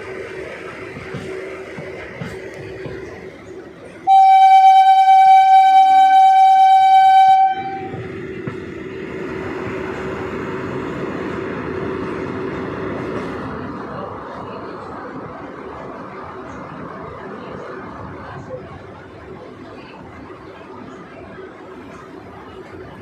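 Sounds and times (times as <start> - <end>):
moving train rumbling: 0.0 - 23.0
loud train horn blast: 4.1 - 8.0.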